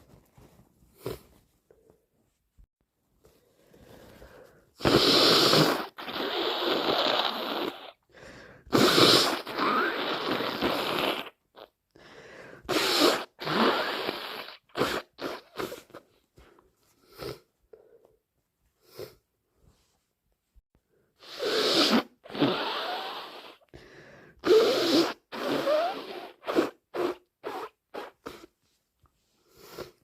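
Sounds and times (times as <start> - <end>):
person blowing congested nose: 0.9 - 1.4, 3.6 - 16.1, 17.0 - 17.5, 18.8 - 19.2, 21.1 - 28.6, 29.4 - 30.0
short quick sniffs: 3.9 - 7.9, 21.2 - 30.0.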